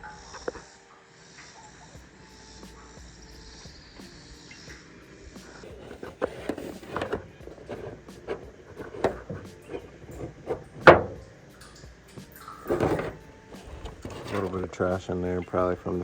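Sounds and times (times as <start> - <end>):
tools and metal parts clattering: 5.6 - 11.5, 12.4 - 14.6.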